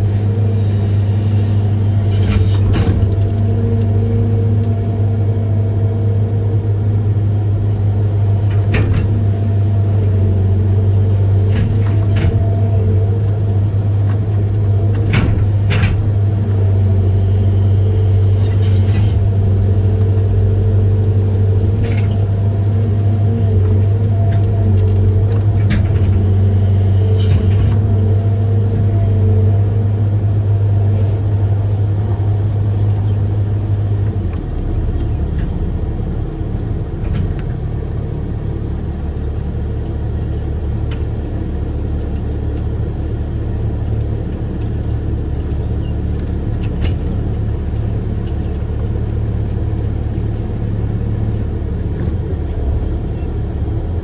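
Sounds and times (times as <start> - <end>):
excavator diesel engine drone: 0.0 - 54.0
faint knocks and clanks: 11.4 - 16.3, 32.1 - 39.0.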